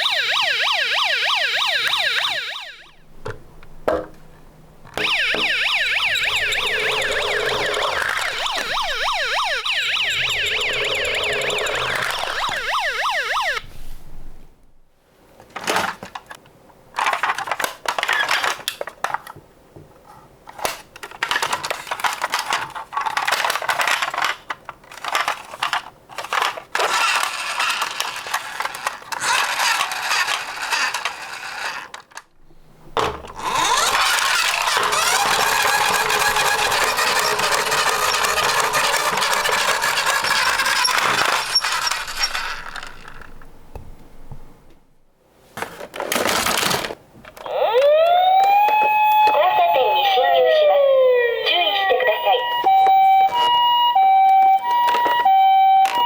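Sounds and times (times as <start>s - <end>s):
metal toy cars clattering: 17.0s - 19.4s, 20.5s - 32.2s, 33.0s - 43.4s, 45.6s - 47.0s.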